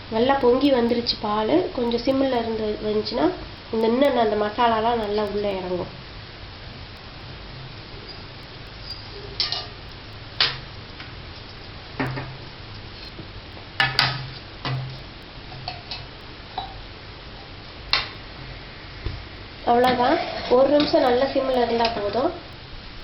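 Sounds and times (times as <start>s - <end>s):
steady hiss: 0.0s - 23.0s.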